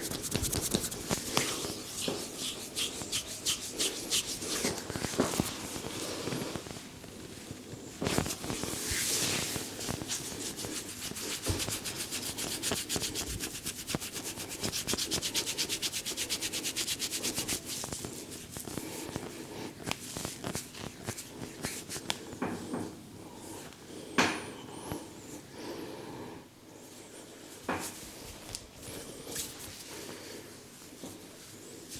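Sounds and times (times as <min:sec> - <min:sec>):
massage strokes on hair and skin: 0:00.0 - 0:22.4.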